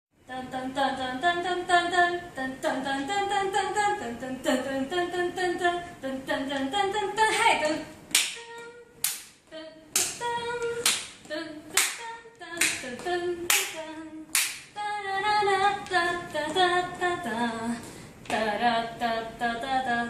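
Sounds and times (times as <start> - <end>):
hand claps: 8.1 - 8.4, 9.0 - 9.4, 10.8 - 12.0, 12.6 - 14.7.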